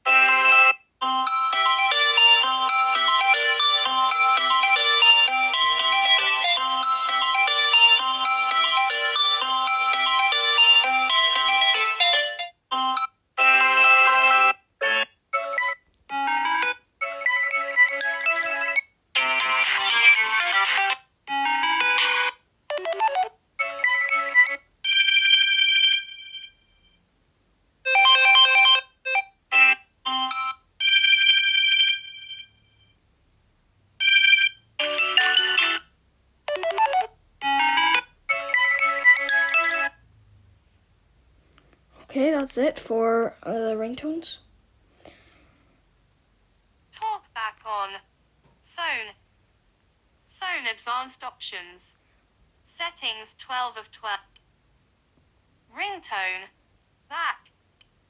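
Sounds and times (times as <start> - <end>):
phone ringtone melodies: 0.1 - 26.7, 27.9 - 32.9, 34.0 - 35.9, 36.5 - 40.0
phone ringtone snippets: 34.0 - 35.9, 36.5 - 40.0.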